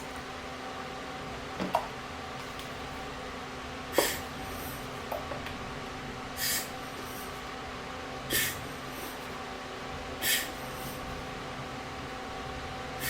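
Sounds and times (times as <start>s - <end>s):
faint hum: 0.0s - 13.0s
air blower puffs: 3.9s - 5.4s, 6.2s - 12.2s.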